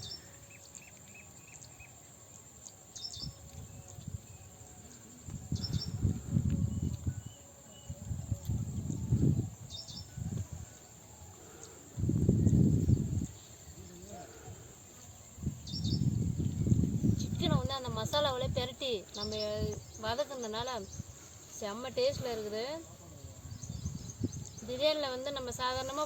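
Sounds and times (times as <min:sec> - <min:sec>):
insects buzzing high-pitched: 0:00.0 - 0:26.0
bird chirps: 0:19.1 - 0:21.8.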